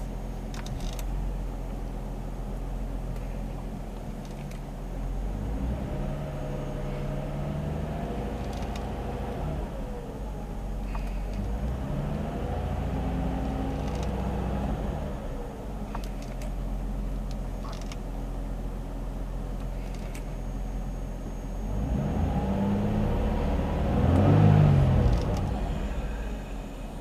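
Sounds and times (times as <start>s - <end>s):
car engine revving: 5.2s - 16.2s, 19.8s - 27.0s.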